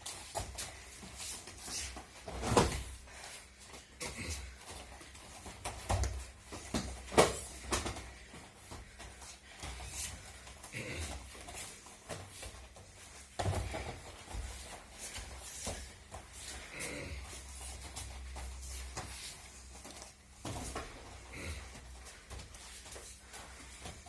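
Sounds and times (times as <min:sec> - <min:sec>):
thumps and slaps on mats: 0:02.2 - 0:03.0, 0:05.5 - 0:08.1.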